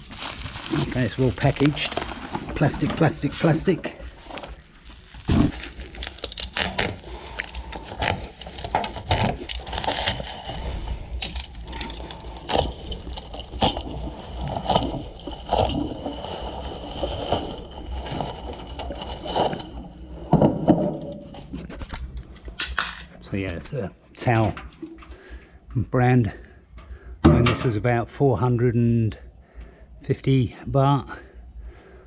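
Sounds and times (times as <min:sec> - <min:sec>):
plastic packaging crinkling: 0:00.0 - 0:22.5.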